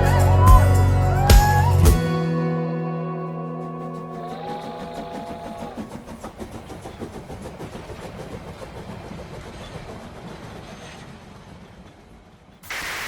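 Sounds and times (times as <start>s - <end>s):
train clattering on rails: 4.1s - 12.8s.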